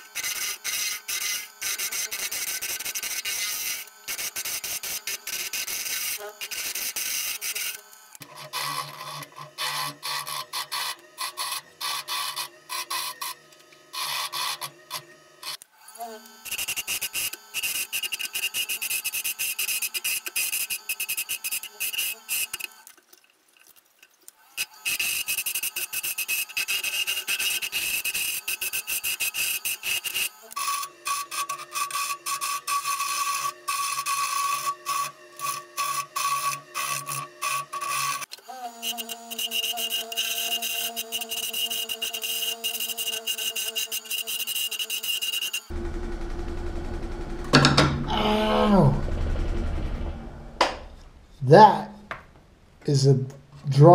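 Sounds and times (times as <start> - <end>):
turning tool scraping wood: 0.1 - 15.6, 24.6 - 45.8
wood lathe humming: 29.8 - 51.4.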